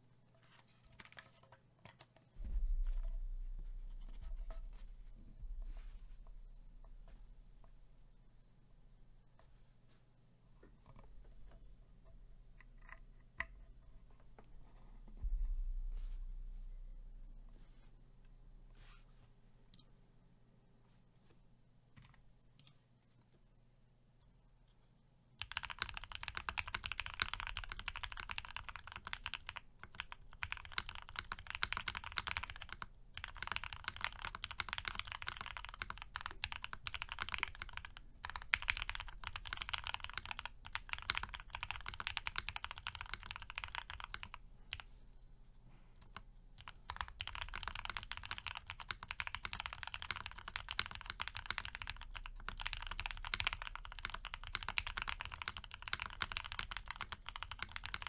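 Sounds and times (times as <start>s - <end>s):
fast typing on mechanical keyboard: 25.4s - 44.8s, 46.0s - 58.0s.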